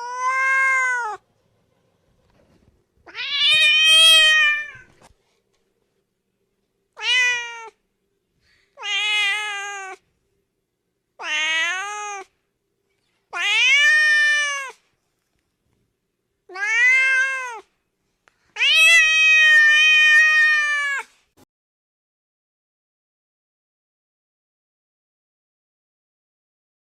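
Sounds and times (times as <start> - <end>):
cat meowing: 0.0 - 1.2, 3.0 - 5.0, 7.0 - 7.8, 8.8 - 10.0, 11.2 - 12.4, 13.3 - 14.8, 16.5 - 17.7, 18.6 - 21.1.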